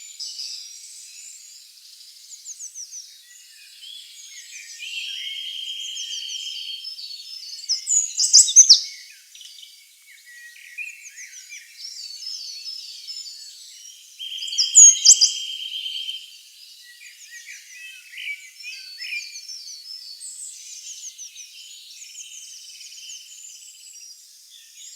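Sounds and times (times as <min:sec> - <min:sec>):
songbirds chirping: 0:00.0 - 0:24.9
high bird trill: 0:14.6 - 0:15.3.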